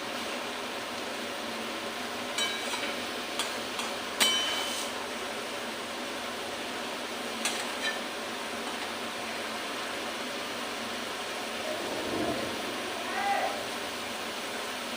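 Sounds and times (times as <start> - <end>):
steady hiss: 0.0 - 14.9
metal utensil clinking on pan: 2.4 - 3.5, 4.2 - 4.8.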